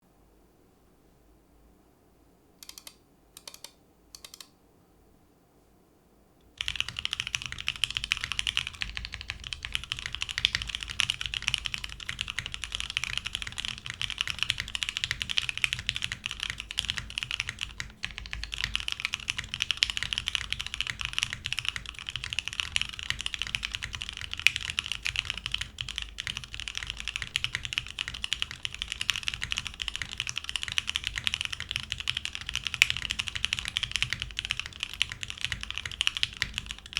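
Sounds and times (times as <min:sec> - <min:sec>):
typing on mechanical keyboard: 0:02.6 - 0:04.5, 0:06.6 - 0:36.9.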